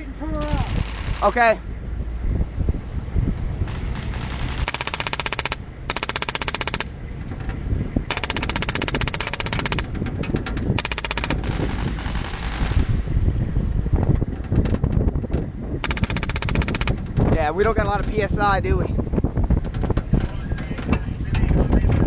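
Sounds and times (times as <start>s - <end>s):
low vehicle rumble: 0.0s - 22.0s
airsoft gun firing bursts: 4.2s - 6.9s, 8.1s - 9.9s, 10.8s - 11.4s, 15.8s - 17.0s.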